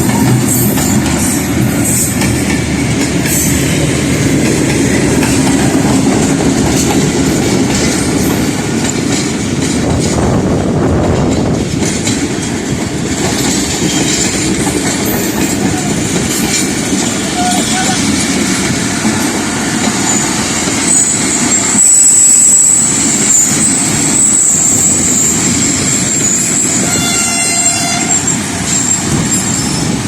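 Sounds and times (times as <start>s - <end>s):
wheels clattering over rail joints: 0.0s - 21.8s
train rumbling past: 0.0s - 30.0s.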